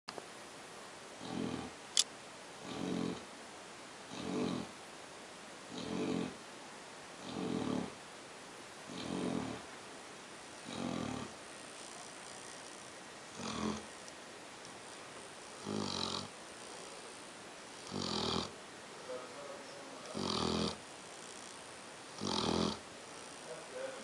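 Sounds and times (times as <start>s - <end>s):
pet snoring: 1.2s - 1.8s, 2.6s - 3.3s, 4.1s - 4.8s, 5.7s - 6.4s, 7.2s - 8.0s, 8.9s - 9.7s, 10.6s - 24.0s.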